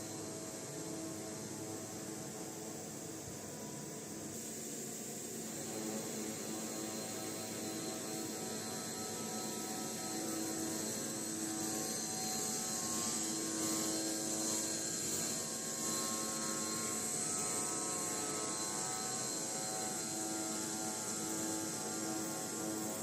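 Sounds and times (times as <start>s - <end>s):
high hiss of saw: 0.0s - 23.0s
metal sawing machine humming: 5.2s - 23.0s.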